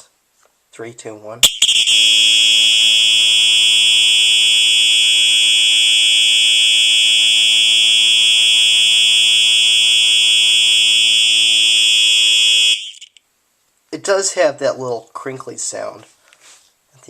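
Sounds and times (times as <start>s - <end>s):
fire alarm horn tone: 1.4s - 13.1s.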